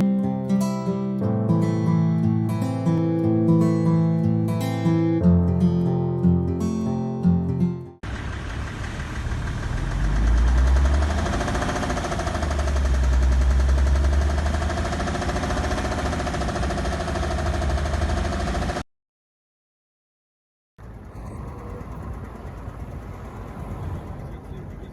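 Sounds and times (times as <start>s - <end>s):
diesel engine knocking: 8.0s - 18.8s, 20.8s - 24.9s.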